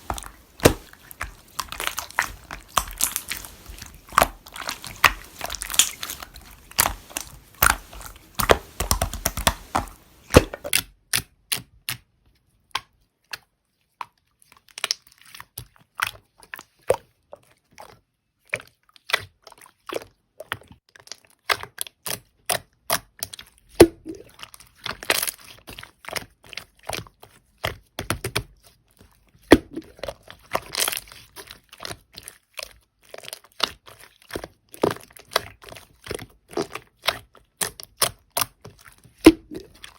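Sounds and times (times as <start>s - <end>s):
slime clicking and popping: 0.0s - 10.8s, 39.2s - 39.9s.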